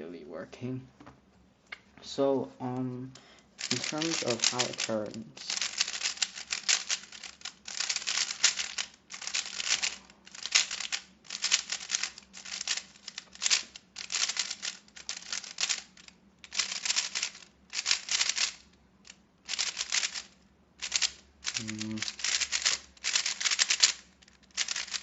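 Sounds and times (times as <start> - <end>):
puzzle cube layers clicking: 3.6 - 18.6, 19.5 - 25.0.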